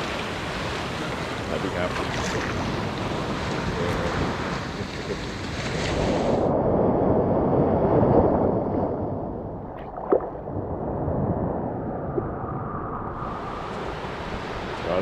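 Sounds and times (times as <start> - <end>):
surf washing on beach: 0.0 - 9.2, 13.1 - 15.0
wind on microphone: 0.0 - 15.0.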